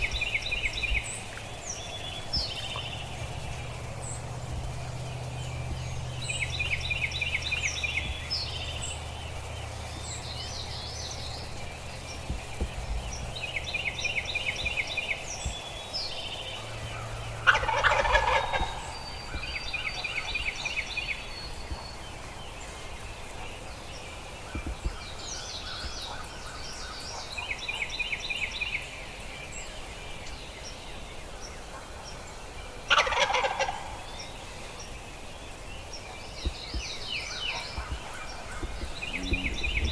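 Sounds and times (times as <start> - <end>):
small birds trilling: 0.0 - 39.9
turkey gobbling: 17.4 - 19.0, 32.9 - 34.0.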